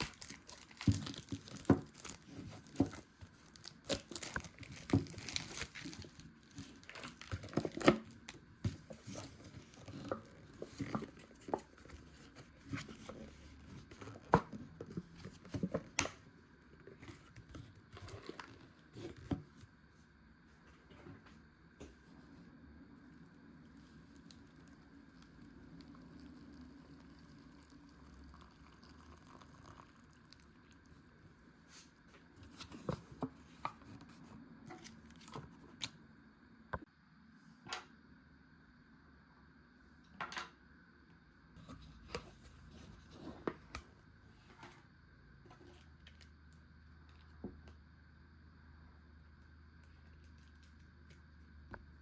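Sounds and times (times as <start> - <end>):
food packaging crinkling: 0.0 - 8.4.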